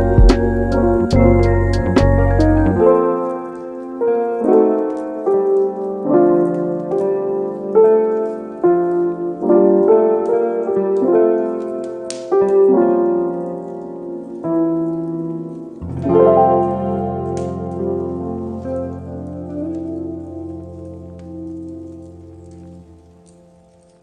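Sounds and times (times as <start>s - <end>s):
low piano bass note: 0.0s - 2.8s
piano melody over chords: 0.0s - 24.0s.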